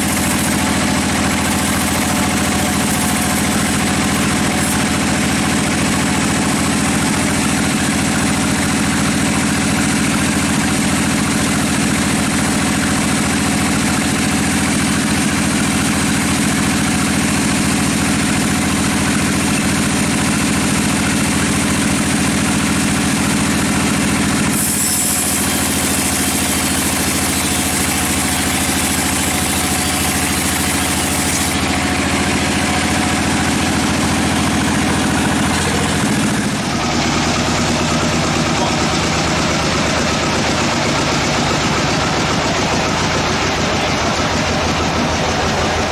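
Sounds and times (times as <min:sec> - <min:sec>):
bright high-pitched machine noise: 0:00.0 - 0:05.0, 0:24.5 - 0:45.9
sawmill machinery humming: 0:00.0 - 0:45.9.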